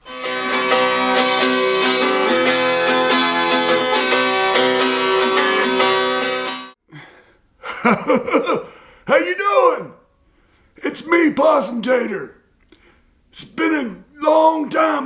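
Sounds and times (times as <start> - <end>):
acoustic guitar strumming: 0.0 - 6.8.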